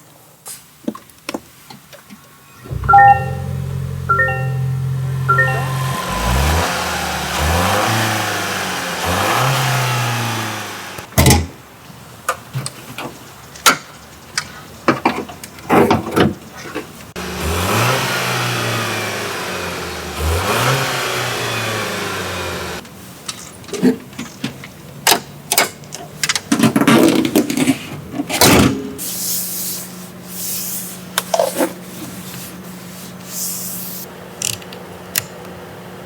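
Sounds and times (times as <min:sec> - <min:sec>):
car engine revving: 0:02.6 - 0:11.1, 0:17.2 - 0:22.8.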